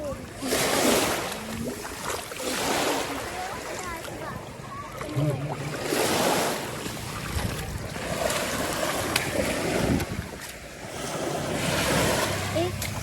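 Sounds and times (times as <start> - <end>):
sea waves washing in: 0.0 - 13.0
wind buffeting microphone: 6.2 - 13.0.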